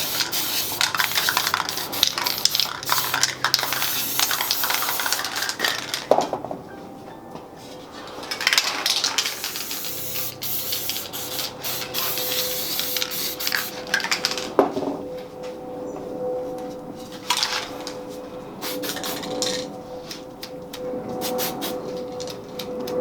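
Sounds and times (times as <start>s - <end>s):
spray paint cans hissing: 0.0s - 6.2s, 8.0s - 14.6s, 18.6s - 19.7s, 21.2s - 22.1s
clatter of cans and tools: 0.0s - 6.6s, 7.9s - 11.0s, 11.8s - 15.0s, 17.1s - 18.0s, 18.7s - 19.8s.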